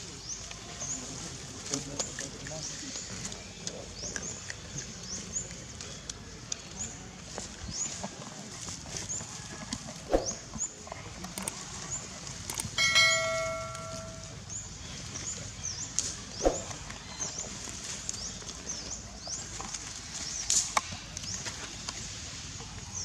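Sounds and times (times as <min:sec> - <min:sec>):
ringing metallic ding: 0:12.8 - 0:14.4
short high chirps: 0:12.8 - 0:14.4.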